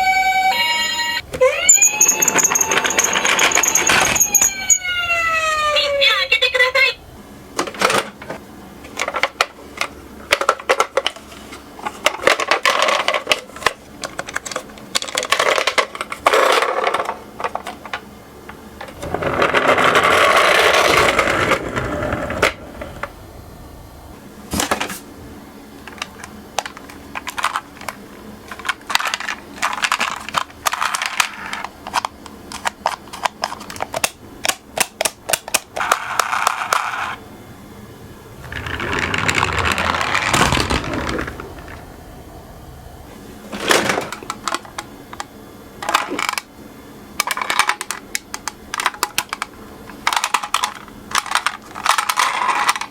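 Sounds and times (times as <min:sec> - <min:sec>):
toy car rolling down slope: 0:01.7 - 0:04.8, 0:19.0 - 0:22.6, 0:35.8 - 0:37.2, 0:38.4 - 0:41.8
toy cars clicking and clattering: 0:01.9 - 0:04.5, 0:25.9 - 0:37.2, 0:38.5 - 0:41.7, 0:47.2 - 0:52.9.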